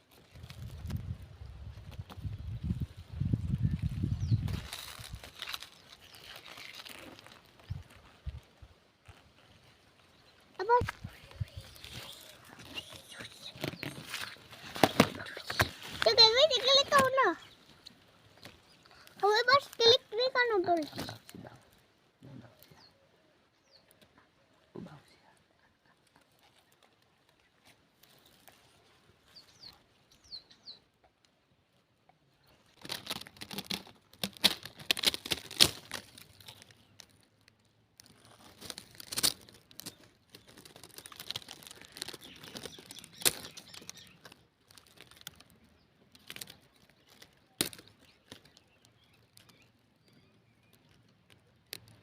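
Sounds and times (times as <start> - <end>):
rustling and crackling: 0.0 - 22.8, 23.8 - 30.3, 30.9 - 52.0
faint high bird chirps: 2.3 - 4.7, 29.3 - 30.9, 40.4 - 44.3.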